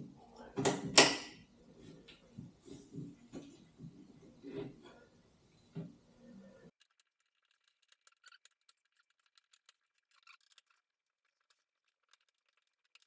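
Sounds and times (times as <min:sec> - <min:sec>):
faint small clicks and ticks: 0:06.7 - 0:13.0.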